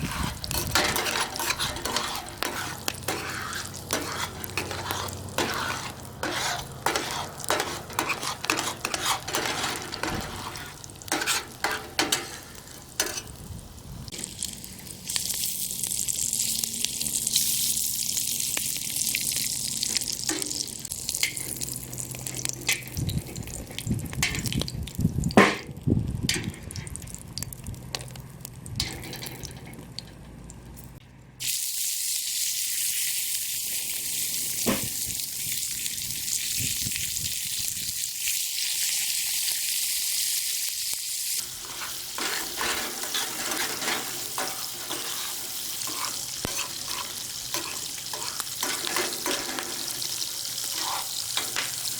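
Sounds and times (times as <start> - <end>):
utensil stirring and scraping: 0.0 - 13.3, 41.4 - 51.9
food sizzling in a pan: 0.0 - 24.5, 31.4 - 51.9.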